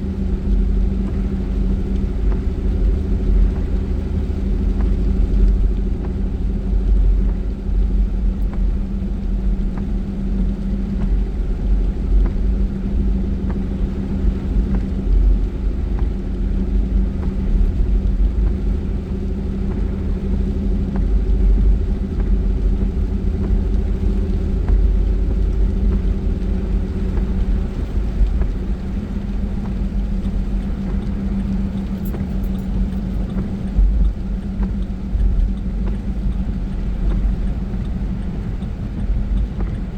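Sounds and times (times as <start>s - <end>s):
car engine drone: 0.0s - 39.9s
road rumble: 0.0s - 39.9s.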